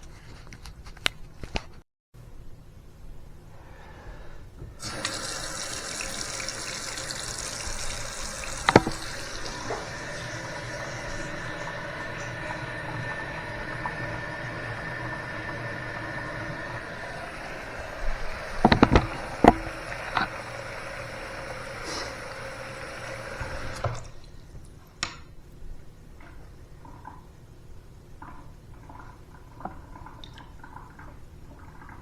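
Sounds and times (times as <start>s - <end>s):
faucet running into sink: 4.8s - 24.6s
water dripping: 4.8s - 24.9s, 29.6s - 32.0s
sharp knocks: 8.6s - 9.2s, 18.6s - 20.2s.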